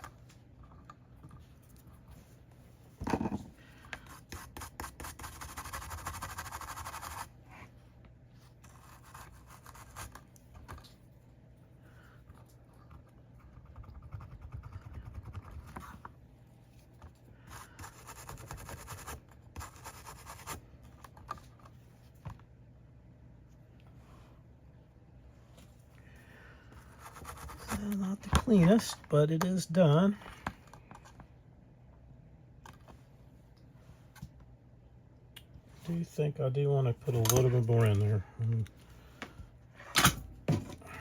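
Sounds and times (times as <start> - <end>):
brush scrubbing circuit board: 4.2 - 7.3.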